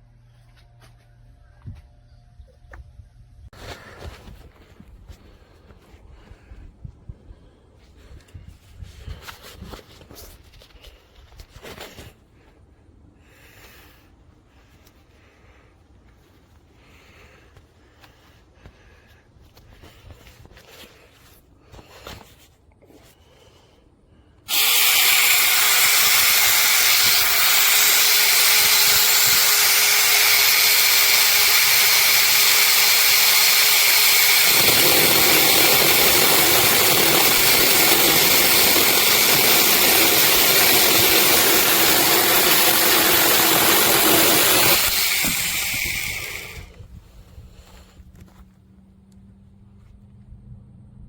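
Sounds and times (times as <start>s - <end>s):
electric chainsaw running: 24.5s - 46.8s.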